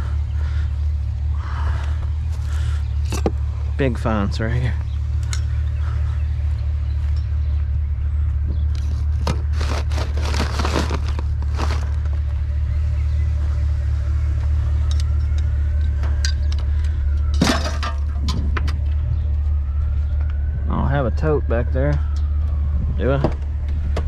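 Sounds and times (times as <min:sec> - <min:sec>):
vehicle engine idling: 0:00.0 - 0:24.0
hard objects clinking and clattering: 0:09.1 - 0:12.1, 0:17.3 - 0:18.3.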